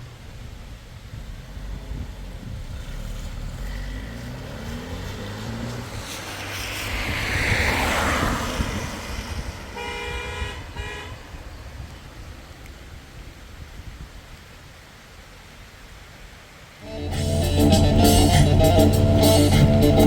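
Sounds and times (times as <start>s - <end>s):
vehicle engine running: 0.0s - 6.4s, 16.9s - 20.0s
vehicle passing: 0.4s - 11.8s, 16.8s - 20.0s
car horn toots: 9.8s - 11.2s, 16.8s - 20.0s.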